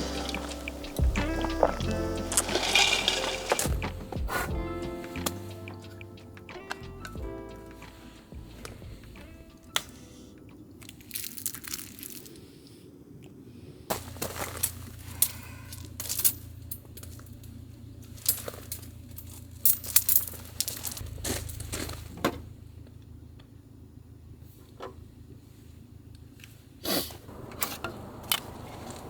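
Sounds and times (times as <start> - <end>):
low steady rumble: 0.0 - 10.8
rustling handling noises: 13.9 - 22.4.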